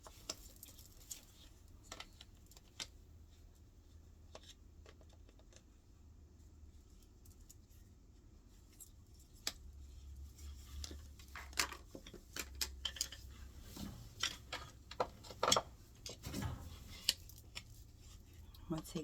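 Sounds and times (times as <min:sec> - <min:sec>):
metal parts and screws clattering: 0:10.4 - 0:19.0.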